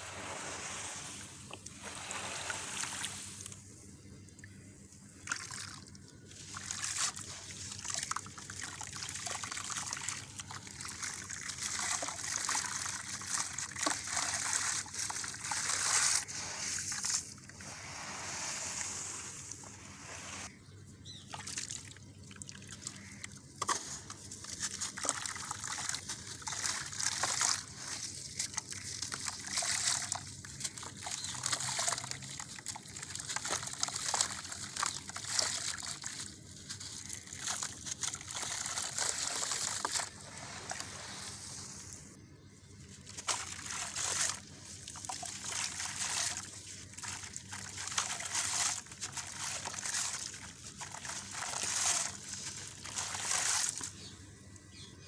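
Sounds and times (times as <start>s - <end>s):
water trickling and sloshing: 21.3s - 42.1s, 43.0s - 54.1s.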